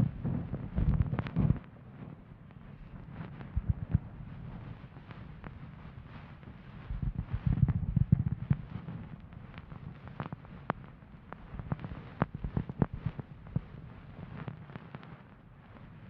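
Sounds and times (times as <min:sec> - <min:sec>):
ear-pick rubbing on microphone: 0:02.8 - 0:10.8.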